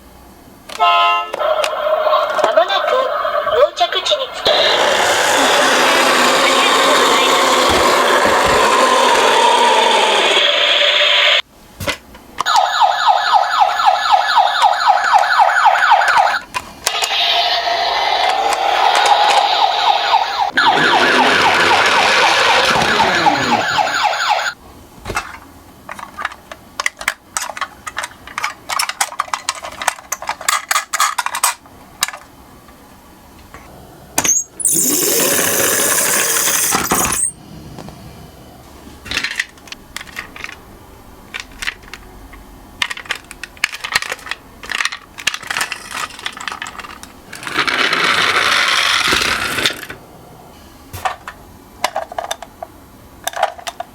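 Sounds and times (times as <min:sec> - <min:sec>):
toy siren: 0:00.8 - 0:03.5, 0:04.4 - 0:11.4, 0:12.5 - 0:24.6
loud noise bursts: 0:04.5 - 0:11.4, 0:17.0 - 0:24.6
toy cars clattering and clicking: 0:25.2 - 0:32.3, 0:34.6 - 0:37.4, 0:39.0 - 0:40.6, 0:41.3 - 0:50.0, 0:51.0 - 0:53.9.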